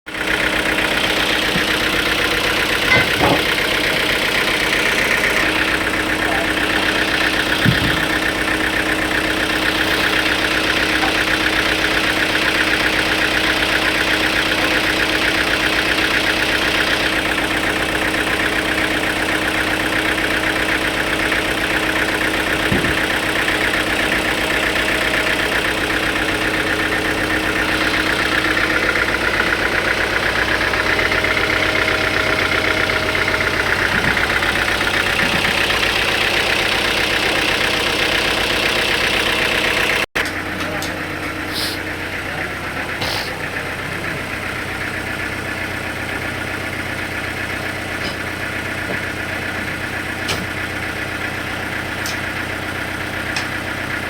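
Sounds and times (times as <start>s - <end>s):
engine running steadily: 0.1s - 54.0s
short knocks: 2.8s - 4.1s, 7.5s - 8.3s.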